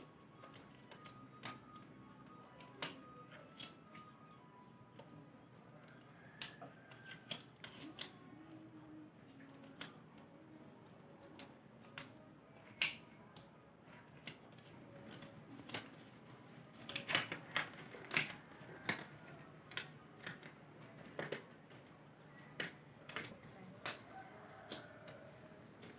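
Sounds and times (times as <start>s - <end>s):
small objects clicking and tapping: 0.3s - 4.1s, 11.2s - 13.5s, 14.2s - 25.9s.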